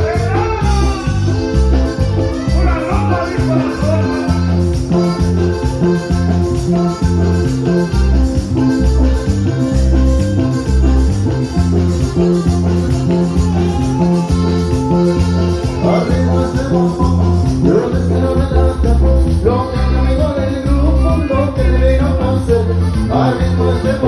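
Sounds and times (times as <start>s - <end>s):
norteno band with saxophone: 0.0s - 24.0s.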